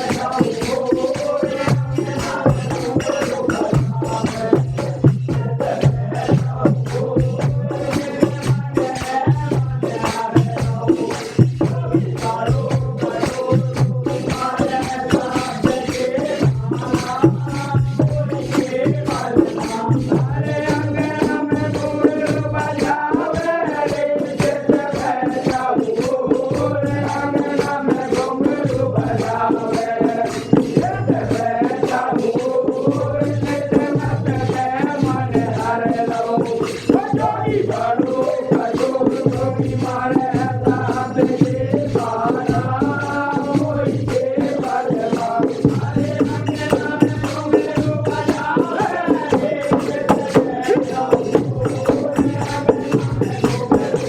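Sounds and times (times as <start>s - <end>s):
deep drum beat: 0.0s - 25.8s, 37.0s - 54.0s.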